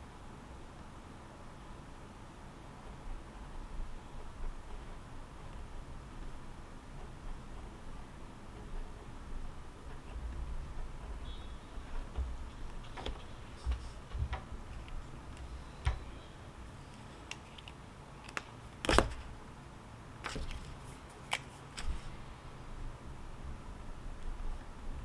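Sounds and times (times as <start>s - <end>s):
small clicks and taps: 9.9s - 16.2s.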